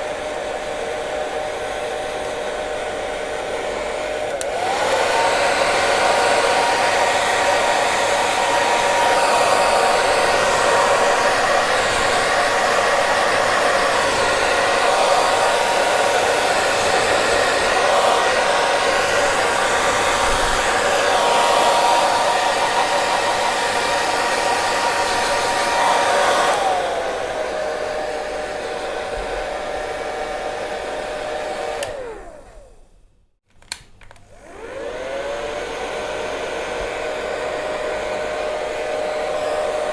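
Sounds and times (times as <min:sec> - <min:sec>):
hair dryer blowing: 0:00.0 - 0:33.0, 0:33.7 - 0:39.9
click: 0:31.8 - 0:32.0, 0:33.5 - 0:34.2.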